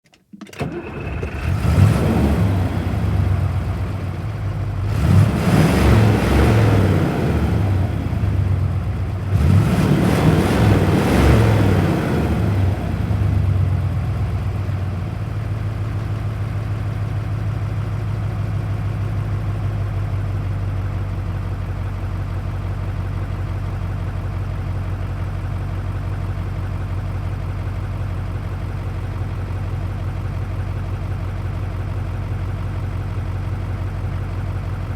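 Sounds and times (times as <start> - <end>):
diesel engine revving and idling: 0.6 - 34.9.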